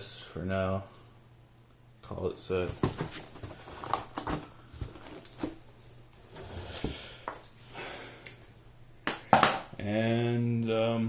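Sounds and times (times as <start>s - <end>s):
faint steady hum: 0.0s - 11.0s
packaging rustling: 2.6s - 7.5s.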